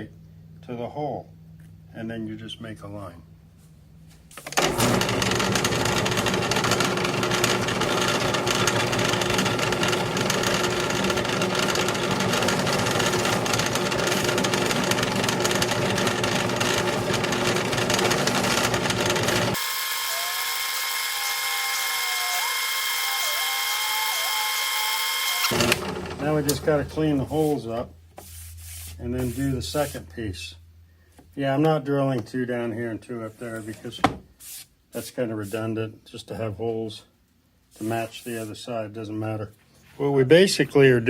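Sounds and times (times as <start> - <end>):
drill press boring holes: 4.4 - 26.9.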